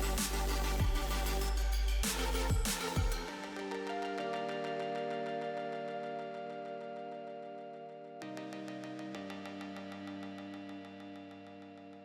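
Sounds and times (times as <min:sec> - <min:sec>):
held synth chords: 0:00.0 - 0:12.0.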